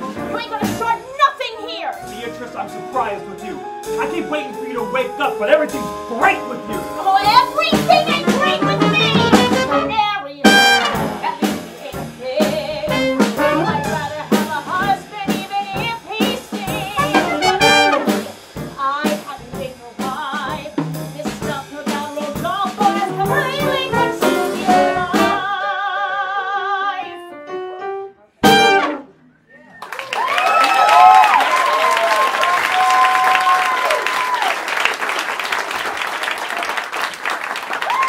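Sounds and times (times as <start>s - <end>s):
brassy jazz band music: 0.0s - 25.6s, 27.1s - 29.2s.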